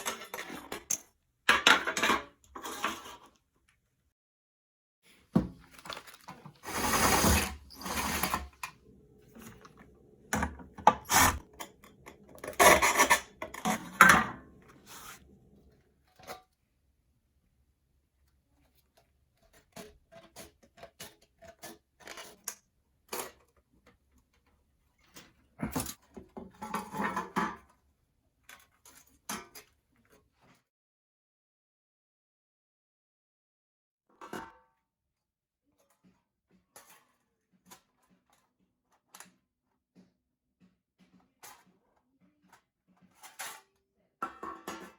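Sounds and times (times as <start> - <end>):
tools scraping steel tray: 6.6 - 15.3.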